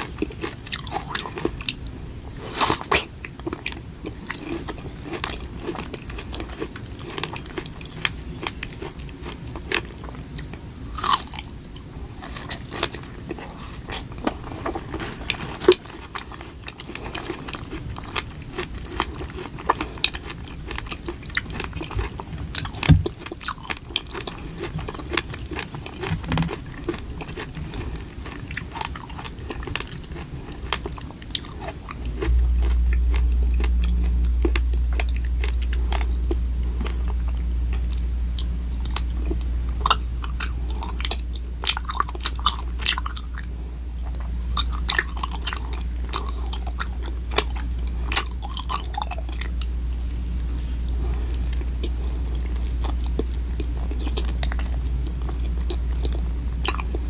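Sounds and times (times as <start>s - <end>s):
crunchy chewing: 0.0s - 57.0s
low hum: 31.2s - 57.0s.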